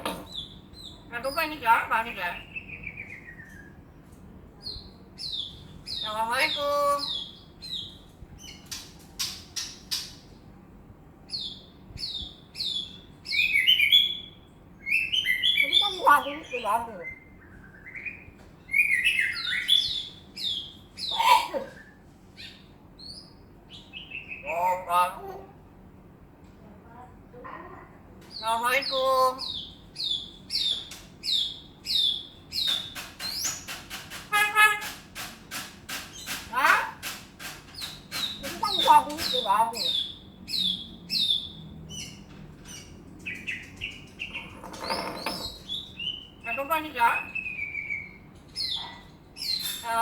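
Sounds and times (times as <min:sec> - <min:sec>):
myna bird calling: 0:28.3 - 0:50.0.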